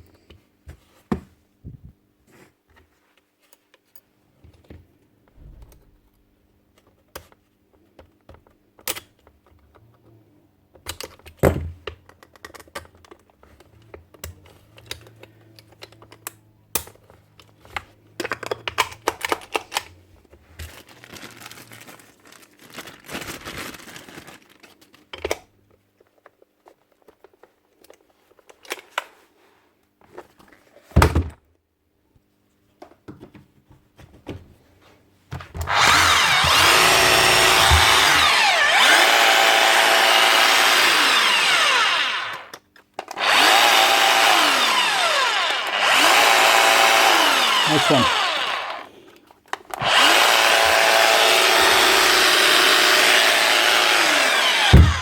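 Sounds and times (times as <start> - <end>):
rustling: 20.5 - 25.1.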